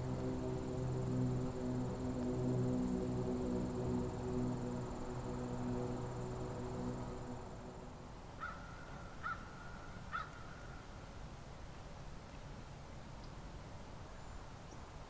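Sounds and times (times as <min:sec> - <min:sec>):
low steady hum: 0:00.0 - 0:10.1.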